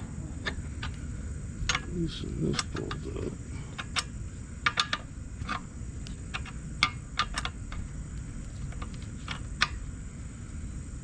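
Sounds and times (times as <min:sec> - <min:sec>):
wrench clicking on metal bolt: 0:06.3 - 0:07.8.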